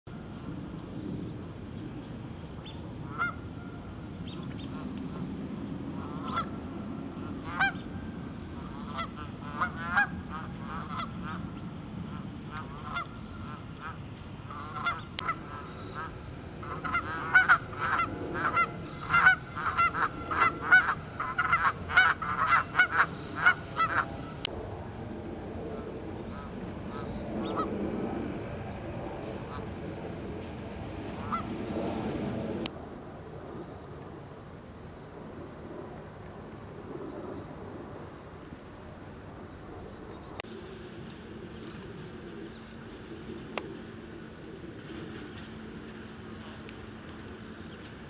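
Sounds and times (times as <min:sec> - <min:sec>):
geese honking: 0:03.0 - 0:03.9, 0:06.0 - 0:06.6, 0:07.2 - 0:08.0, 0:08.6 - 0:24.5, 0:25.7 - 0:28.6, 0:29.2 - 0:29.8, 0:30.9 - 0:31.7.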